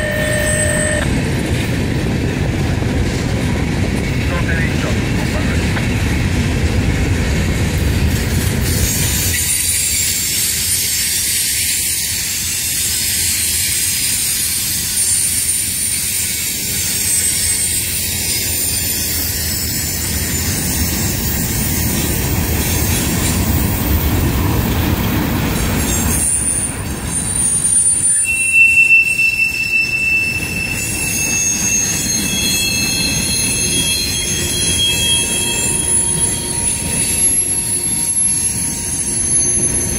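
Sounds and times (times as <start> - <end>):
high-pitched wheel squeal: 0.0 - 1.0, 9.2 - 20.7, 25.8 - 39.9
train wheels rumbling on rails: 0.0 - 39.9.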